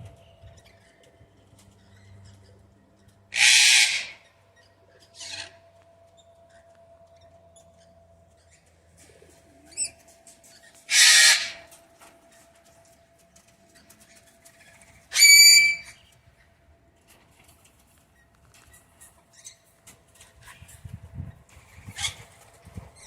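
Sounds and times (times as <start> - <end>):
parrots screeching: 3.3 - 7.2, 9.7 - 11.8, 13.8 - 16.1.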